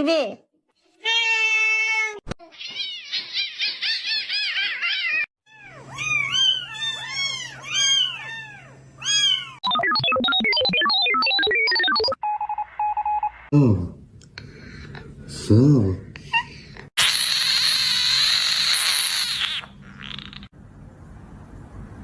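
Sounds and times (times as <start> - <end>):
pulsing electronic beep: 9.6 - 13.4.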